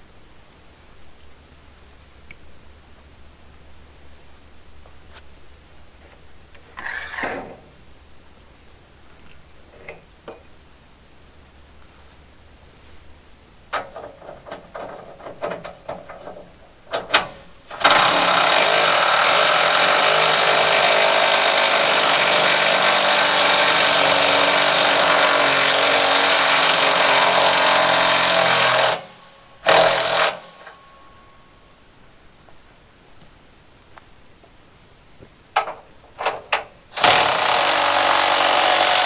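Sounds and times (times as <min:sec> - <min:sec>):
knocks and clanks: 0:13.7 - 0:30.8, 0:35.6 - 0:39.0
power tool running: 0:16.9 - 0:30.8, 0:36.9 - 0:39.0.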